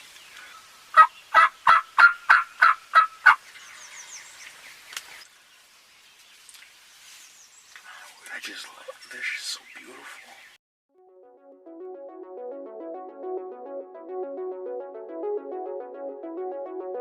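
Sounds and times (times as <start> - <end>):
wild turkey yelping: 0.4 - 4.0.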